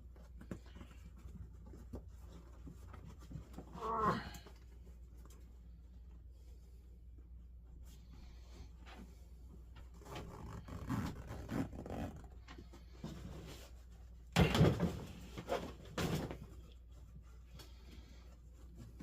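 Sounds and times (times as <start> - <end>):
rustling and scraping on seat: 7.8 - 14.3.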